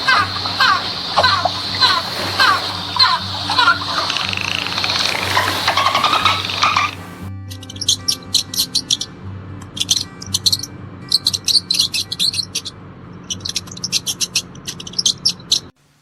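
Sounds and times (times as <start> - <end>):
small birds chirping: 0.0 - 7.3
background music: 0.0 - 13.4.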